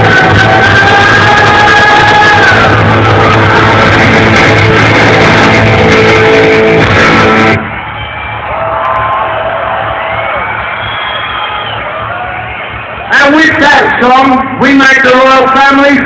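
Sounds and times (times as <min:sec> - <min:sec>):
punk rock band playing: 0:00.0 - 0:08.4
crowd whooping and cheering: 0:00.0 - 0:14.0.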